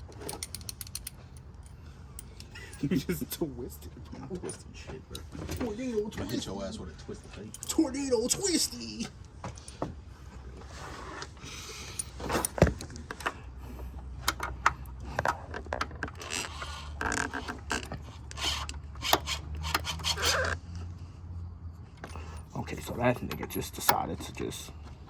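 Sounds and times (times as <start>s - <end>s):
parts clicking and scraping: 0.0s - 2.8s, 8.4s - 21.0s, 21.8s - 25.0s.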